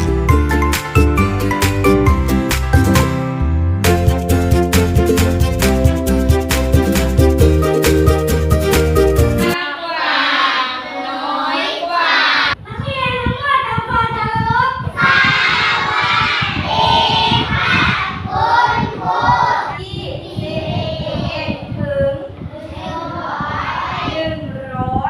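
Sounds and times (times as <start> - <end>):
children singing together: 9.6 - 12.6, 15.0 - 21.7, 22.4 - 24.4.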